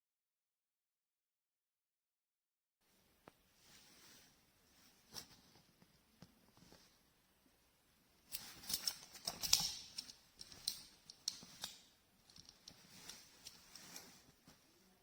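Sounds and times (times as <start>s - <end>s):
scraping rustles: 12.6s - 14.7s.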